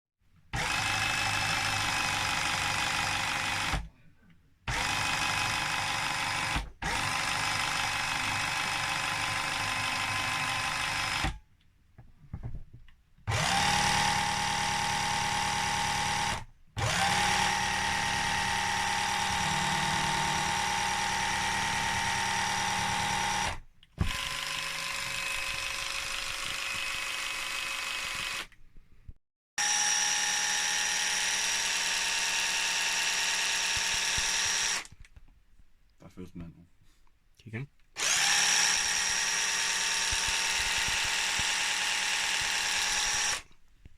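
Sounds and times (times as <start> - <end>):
motor whining: 13.3 - 28.6, 38.0 - 43.5.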